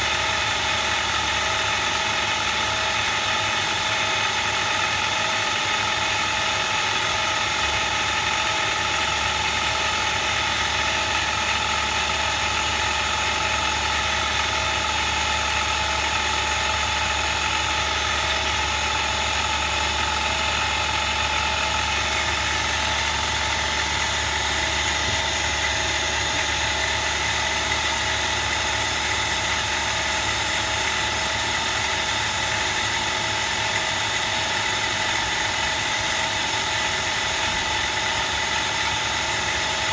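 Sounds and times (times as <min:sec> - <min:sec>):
machine whine: 0:21.8 - 0:26.8, 0:30.5 - 0:39.9.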